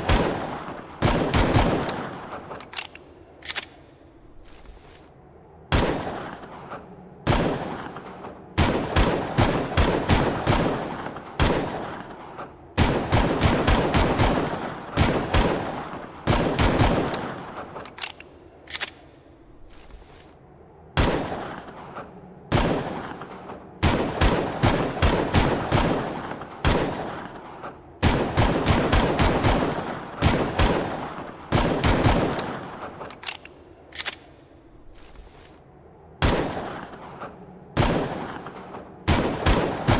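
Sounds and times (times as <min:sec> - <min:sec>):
pistol shots echoing: 0:22.5 - 0:33.5, 0:36.2 - 0:39.9.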